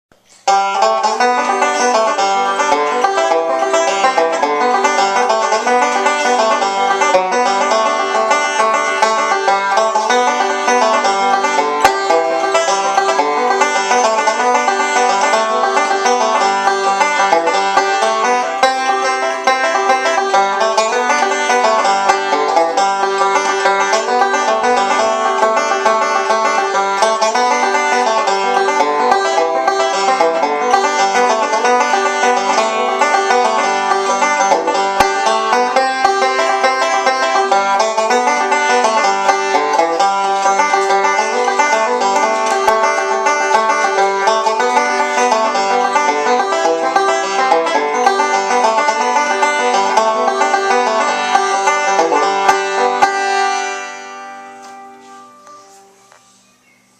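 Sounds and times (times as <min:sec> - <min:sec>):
plucked string instrument music: 0:00.2 - 0:56.2.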